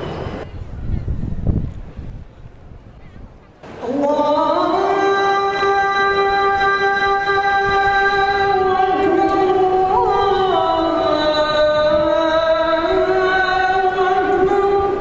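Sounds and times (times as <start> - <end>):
person chanting a long note: 3.8 - 15.0.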